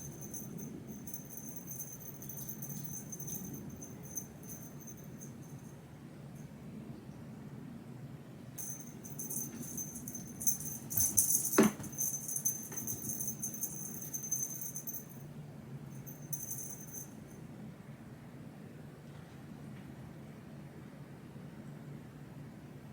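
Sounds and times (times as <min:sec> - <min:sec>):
light metallic jingling: 0:00.0 - 0:05.8, 0:08.6 - 0:15.3, 0:15.9 - 0:17.4.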